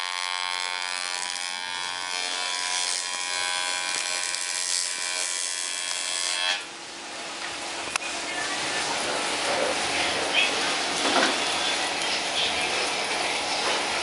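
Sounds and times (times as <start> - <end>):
small electric motor buzzing: 0.0 - 6.7.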